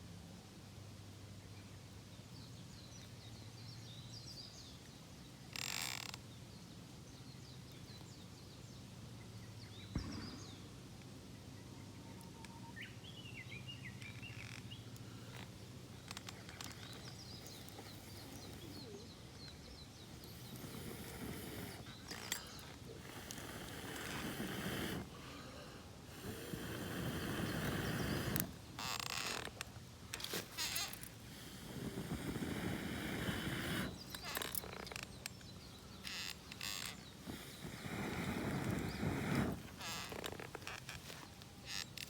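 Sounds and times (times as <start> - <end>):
small birds chirping: 11.6 - 42.0
burst of hiss: 20.2 - 29.2, 30.4 - 34.6, 36.1 - 40.8.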